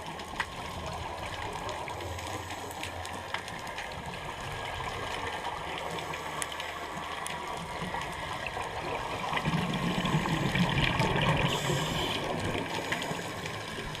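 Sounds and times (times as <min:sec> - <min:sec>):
faint underwater clicks: 0:00.0 - 0:14.0
underwater watery hiss: 0:01.9 - 0:03.2, 0:09.4 - 0:13.9.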